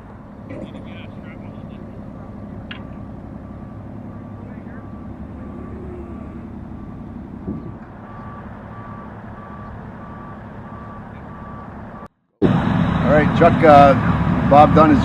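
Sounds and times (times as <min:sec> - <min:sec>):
engine rumble: 0:00.0 - 0:15.0
reversing alarm beeping: 0:01.0 - 0:07.4, 0:08.0 - 0:13.1.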